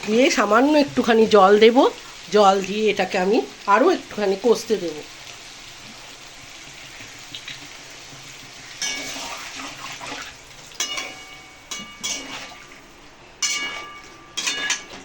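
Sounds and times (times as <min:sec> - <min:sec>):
curry sizzling in a pan: 0:00.0 - 0:15.0
metal spoon scraping a pan: 0:08.7 - 0:09.5, 0:10.8 - 0:12.7, 0:13.4 - 0:15.0
spoon clinking against pan: 0:08.8 - 0:09.2, 0:10.8 - 0:12.4, 0:13.4 - 0:15.0.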